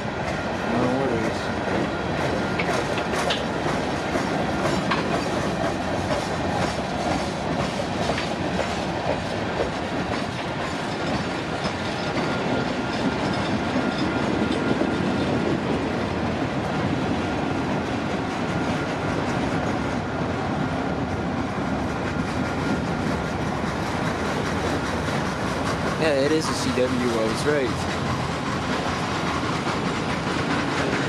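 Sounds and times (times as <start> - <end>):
train wheels rumbling on rail: 0.0 - 31.0
wheels clicking and clacking: 2.6 - 6.8.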